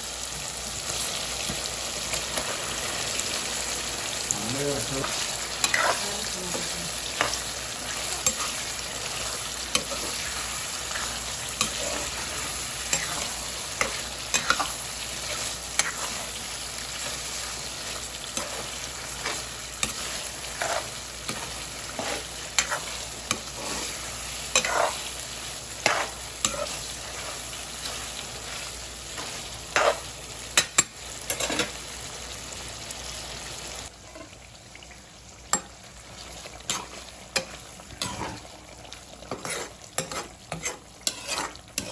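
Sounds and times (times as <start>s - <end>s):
food sizzling in a pan: 0.0s - 41.9s
spoon scraping and knocking a pan: 5.0s - 16.4s, 18.3s - 25.1s, 25.8s - 28.6s, 29.2s - 31.7s, 39.3s - 41.9s.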